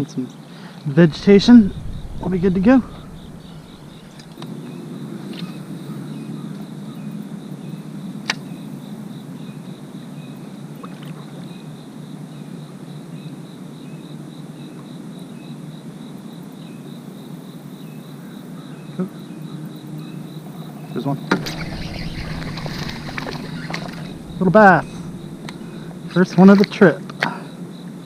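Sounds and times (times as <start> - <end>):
insect chirping trill: 1.1 - 4.4, 21.4 - 26.8
outdoor noise rush: 1.1 - 4.4, 21.4 - 26.9.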